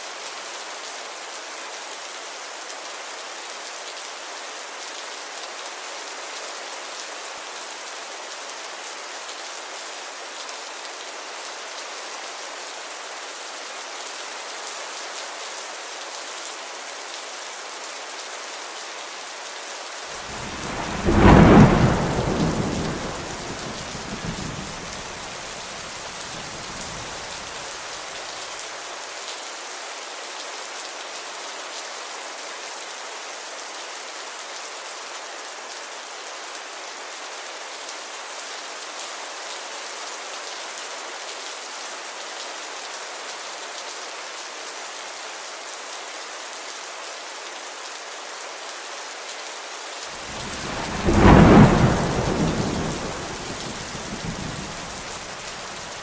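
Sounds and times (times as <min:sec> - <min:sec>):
steady rain: 0:00.0 - 0:56.0
thunder clap rumbling: 0:20.2 - 0:27.5, 0:50.2 - 0:56.0.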